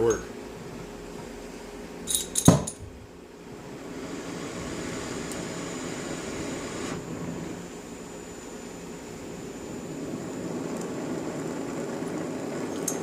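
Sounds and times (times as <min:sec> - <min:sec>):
gas torch flame hissing: 0:03.5 - 0:13.0.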